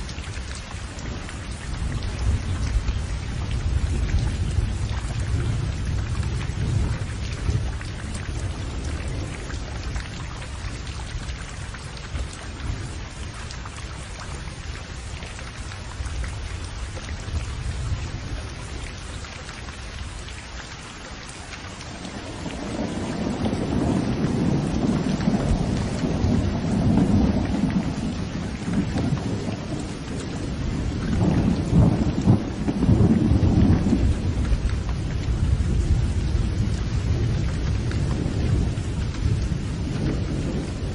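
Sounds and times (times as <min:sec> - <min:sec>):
steady rain falling: 0:00.0 - 0:40.9
thunder rumbling: 0:01.0 - 0:13.0, 0:21.9 - 0:40.9.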